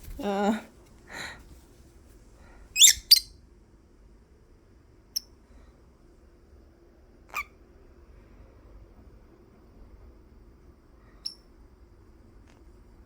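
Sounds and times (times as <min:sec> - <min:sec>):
faint bird peep: 0:02.8 - 0:03.3
lovebird squawking: 0:02.8 - 0:03.3.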